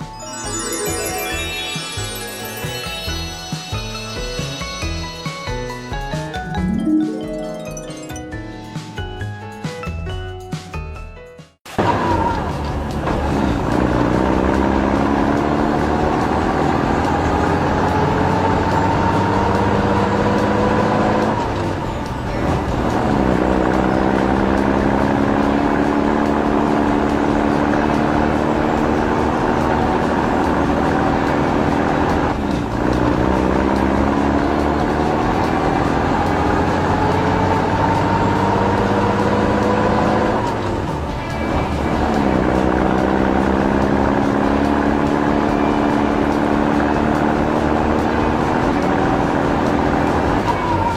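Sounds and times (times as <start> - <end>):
heavy vehicle engine running: 11.7 - 50.9.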